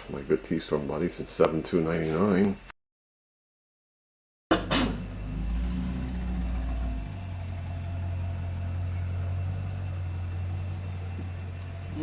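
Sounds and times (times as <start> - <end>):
vehicle engine running: 4.5 - 12.0.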